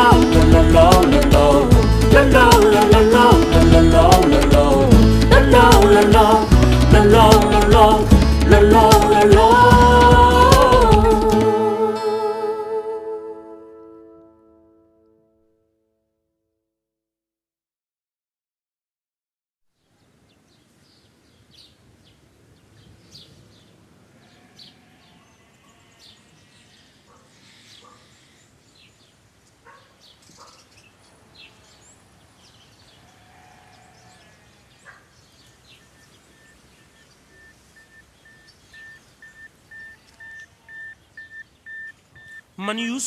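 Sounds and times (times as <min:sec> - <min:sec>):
background hiss: 0:00.0 - 0:14.4, 0:19.7 - 0:43.0
birds chirping: 0:20.2 - 0:43.0.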